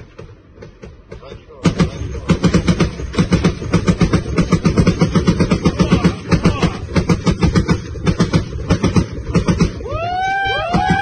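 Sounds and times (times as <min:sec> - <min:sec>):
machine gun firing: 0:01.6 - 0:09.8.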